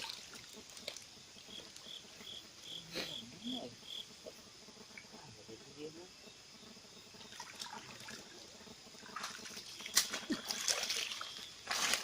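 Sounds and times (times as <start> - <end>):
water splashing in shallow river: 0.0 - 1.2, 7.3 - 12.0.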